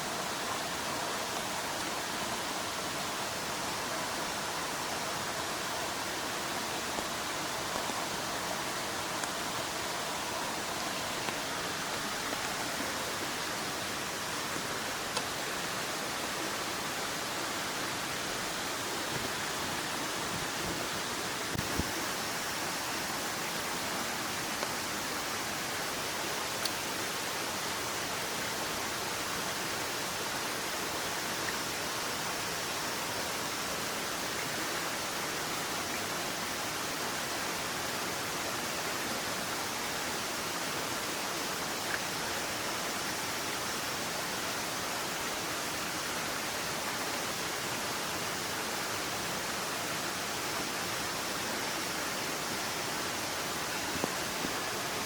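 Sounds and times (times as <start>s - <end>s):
heavy rain falling: 0.0s - 34.4s.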